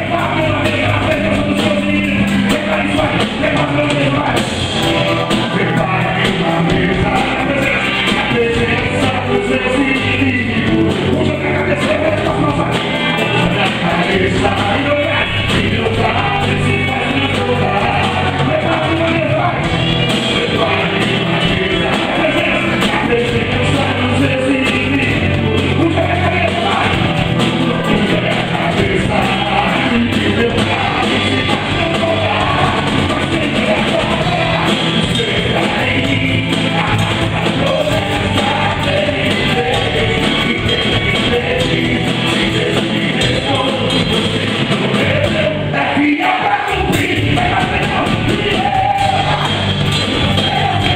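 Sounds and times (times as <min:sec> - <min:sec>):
live band playing: 0:00.0 - 0:50.9
person singing: 0:00.0 - 0:50.9.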